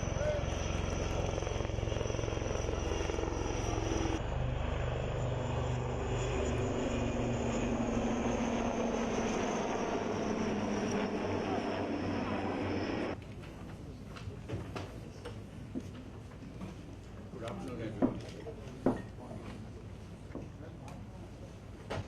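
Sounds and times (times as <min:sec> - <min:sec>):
aircraft engine in flight: 0:00.0 - 0:13.2.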